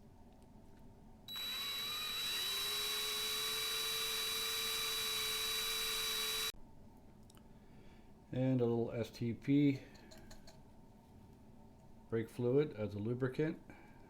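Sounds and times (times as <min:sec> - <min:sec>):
small electric drill running: 0:01.3 - 0:06.5.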